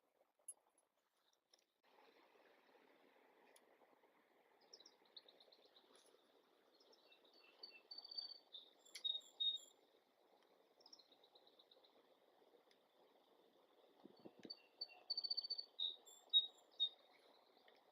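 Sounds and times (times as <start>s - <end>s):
small birds chirping and trilling: 4.6s - 10.0s, 10.6s - 12.1s, 14.1s - 17.9s.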